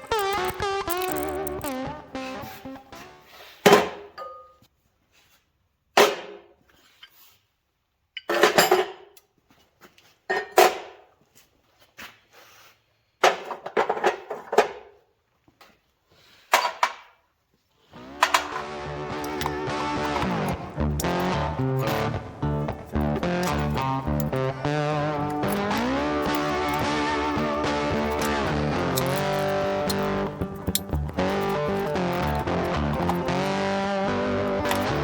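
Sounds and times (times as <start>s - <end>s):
steel vise parts clanking: 0.0s - 1.7s, 18.1s - 35.0s.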